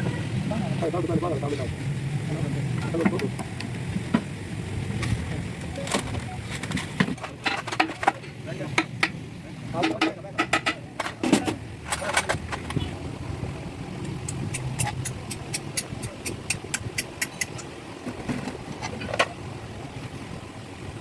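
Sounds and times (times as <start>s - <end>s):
steady low rumble: 0.0s - 21.0s
sharp clicks: 14.0s - 17.7s.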